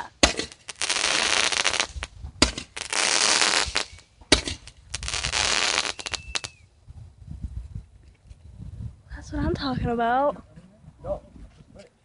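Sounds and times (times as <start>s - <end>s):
fireworks popping and crackling: 0.0s - 6.6s.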